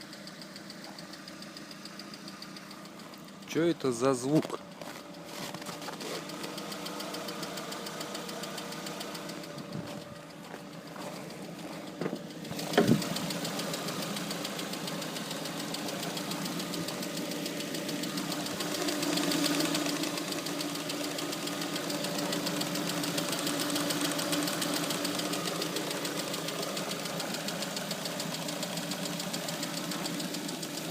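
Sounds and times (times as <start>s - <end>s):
car engine idling with knock: 0.0s - 30.9s.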